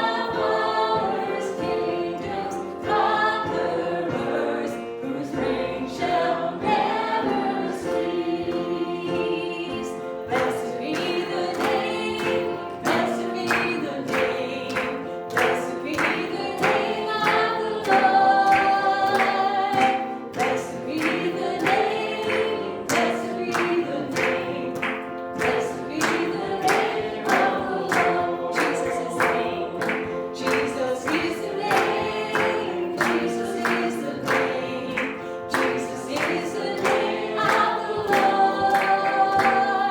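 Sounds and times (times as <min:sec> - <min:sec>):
group singing a hymn: 0:00.0 - 0:39.9
instrumental accompaniment with beat: 0:00.0 - 0:39.9.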